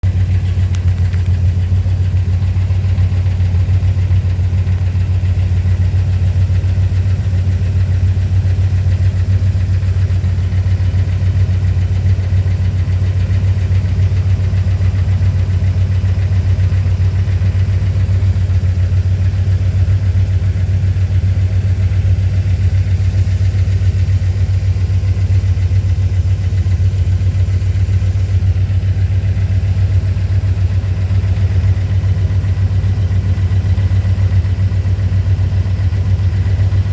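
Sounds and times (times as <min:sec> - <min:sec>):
car engine idling with ticking: 0:00.0 - 0:36.9.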